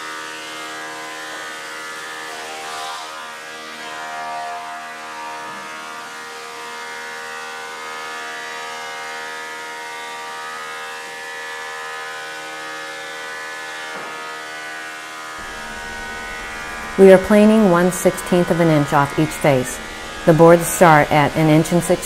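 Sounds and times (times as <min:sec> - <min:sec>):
thickness planer whining: 0:00.0 - 0:22.0
brief knock: 0:13.9 - 0:14.2.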